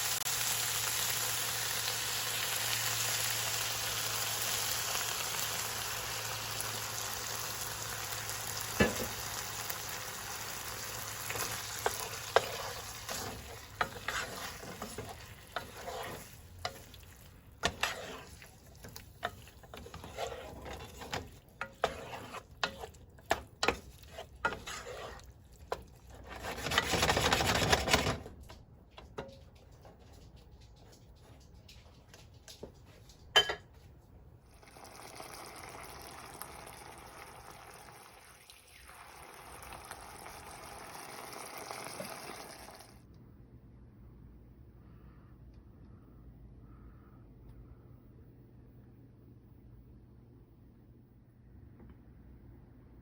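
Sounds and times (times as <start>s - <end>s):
food sizzling in a frying pan: 0.0s - 25.8s, 34.6s - 43.0s
utensil scraping a pan: 8.6s - 28.3s.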